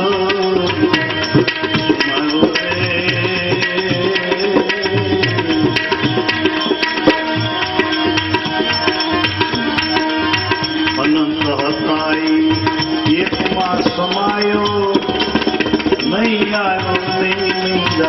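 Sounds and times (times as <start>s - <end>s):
hand drums: 0.0s - 18.0s
held melody tone: 0.0s - 18.0s.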